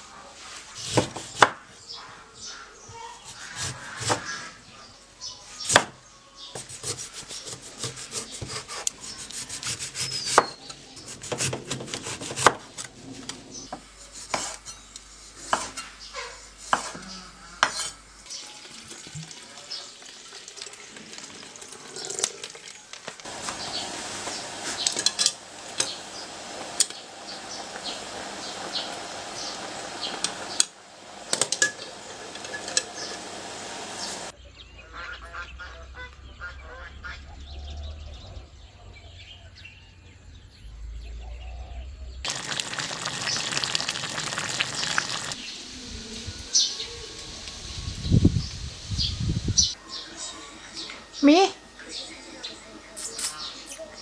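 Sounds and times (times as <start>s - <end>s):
kitchen utensils clinking: 20.0s - 27.0s, 31.3s - 34.3s
steady hiss: 23.2s - 34.3s, 42.3s - 54.0s.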